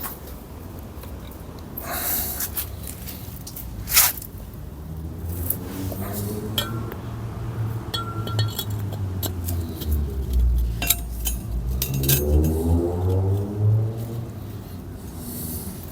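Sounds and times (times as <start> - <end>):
low steady hum: 2.7 - 15.4
light metallic clinks and taps: 6.0 - 7.1, 7.8 - 13.6.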